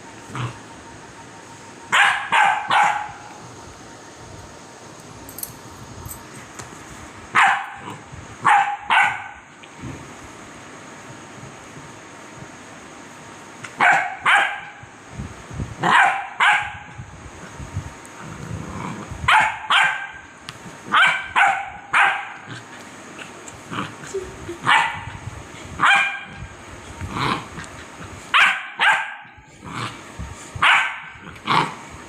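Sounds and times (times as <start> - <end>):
puppy barking: 1.9 - 3.3, 7.4 - 9.4, 13.8 - 14.8, 15.8 - 16.9, 19.3 - 20.2, 20.9 - 22.5, 24.6 - 25.1, 25.8 - 26.4, 28.3 - 29.4, 30.6 - 31.2.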